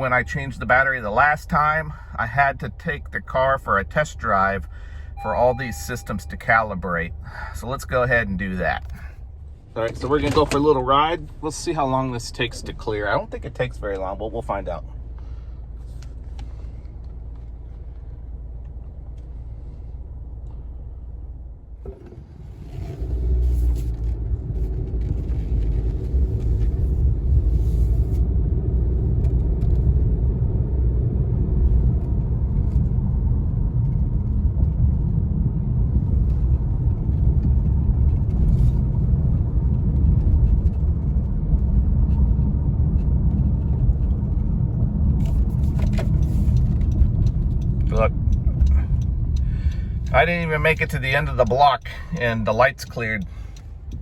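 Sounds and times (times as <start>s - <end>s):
car engine idling: 0.0s - 28.0s, 35.9s - 54.0s
car pulling away and driving: 0.0s - 54.0s.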